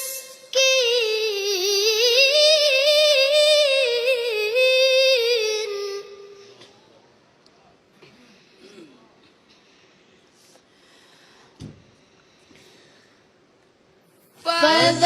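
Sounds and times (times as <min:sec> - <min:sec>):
high voice chanting recitation: 0:14.5 - 0:15.0.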